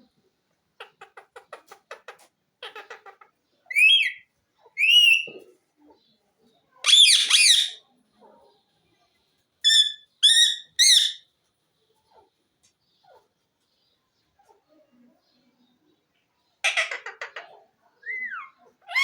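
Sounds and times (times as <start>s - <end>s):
parrot clicking chatter: 0.8s - 3.3s
parrot squawking: 2.6s - 4.2s, 4.8s - 5.4s, 6.8s - 7.8s, 9.6s - 11.2s, 16.6s - 17.4s, 18.0s - 19.0s
parrot whistled calls: 3.7s - 4.2s, 4.8s - 5.3s, 6.9s - 7.8s, 9.7s - 11.2s.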